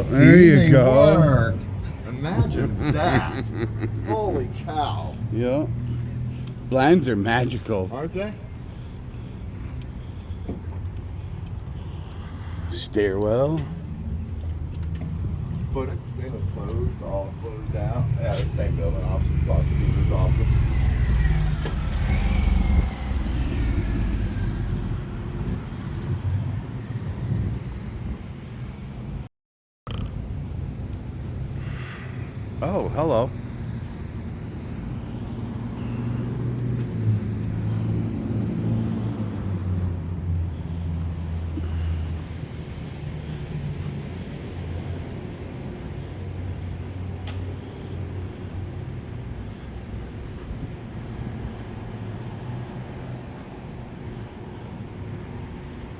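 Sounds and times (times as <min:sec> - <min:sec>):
steady road noise: 0:00.0 - 0:29.3, 0:29.9 - 0:55.9
vehicle engine rumbling: 0:00.0 - 0:29.3, 0:29.9 - 0:55.9
car passing by: 0:14.5 - 0:27.8, 0:34.4 - 0:55.9.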